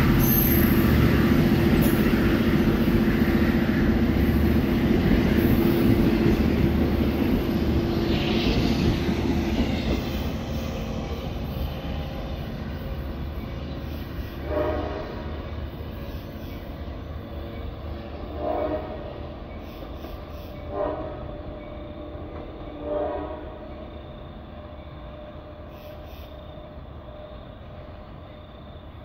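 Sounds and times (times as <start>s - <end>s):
diesel locomotive engine running: 0.0s - 29.0s
train horn blast: 14.4s - 15.4s, 18.2s - 19.3s, 20.7s - 23.9s.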